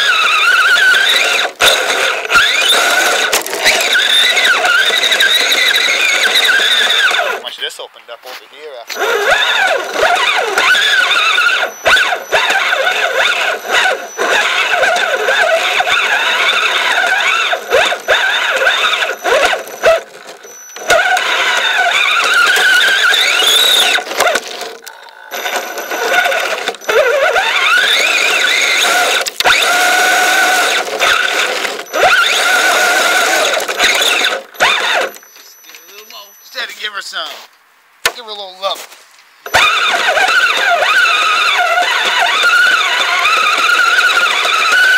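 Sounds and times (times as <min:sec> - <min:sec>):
electric motor and tracks whining: 0:00.0 - 0:36.8, 0:39.4 - 0:44.9.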